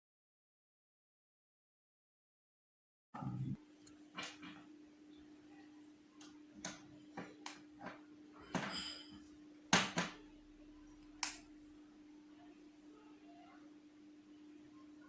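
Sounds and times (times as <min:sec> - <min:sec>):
steady low hum: 0:03.2 - 0:15.0
small clicks and taps: 0:06.2 - 0:08.9.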